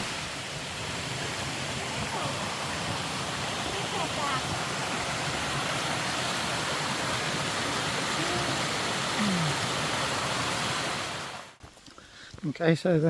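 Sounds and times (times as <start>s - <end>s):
waterfall and stream rushing: 0.0s - 11.7s.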